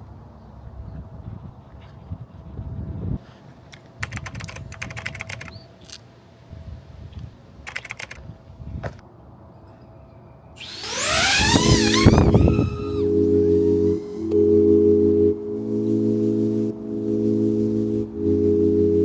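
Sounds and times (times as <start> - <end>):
music with sweeping tones: 10.6 - 19.0.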